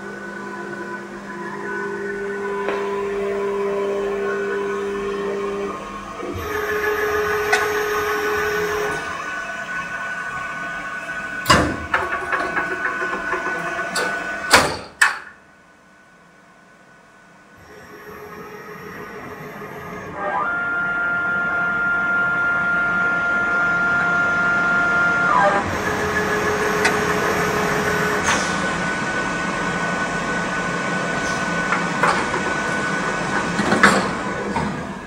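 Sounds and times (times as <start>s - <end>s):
machine motors whining: 0.0s - 15.0s, 17.6s - 35.0s
rushing mechanical noise: 0.0s - 15.1s, 24.2s - 35.0s.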